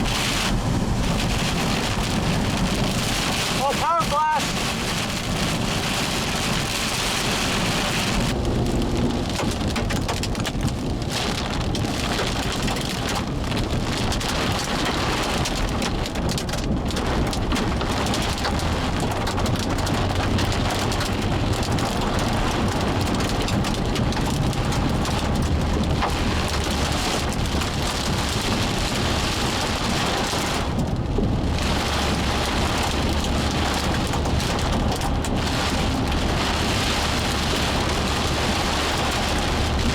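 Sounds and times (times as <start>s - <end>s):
low thunder rumble: 0.0s - 3.6s, 4.4s - 12.1s
heavy rain pouring: 0.0s - 39.9s.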